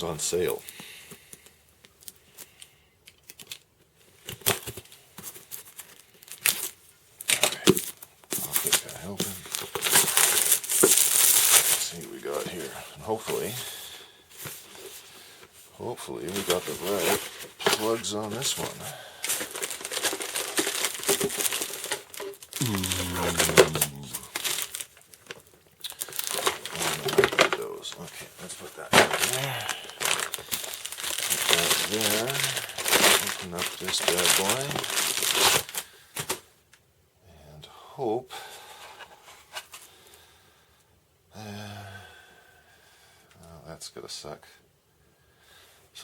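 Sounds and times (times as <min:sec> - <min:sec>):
packaging rustling and crinkling: 0:01.4 - 0:13.5, 0:16.2 - 0:36.4
man humming: 0:22.6 - 0:24.4.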